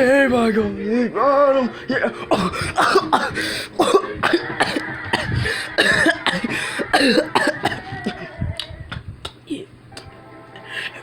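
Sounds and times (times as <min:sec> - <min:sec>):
man coughing: 0:02.3 - 0:08.2.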